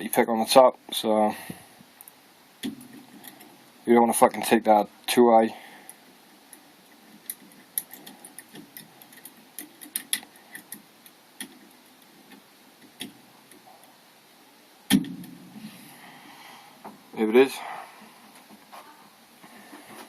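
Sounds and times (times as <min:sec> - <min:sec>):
lock picks clicking: 0:07.2 - 0:11.7.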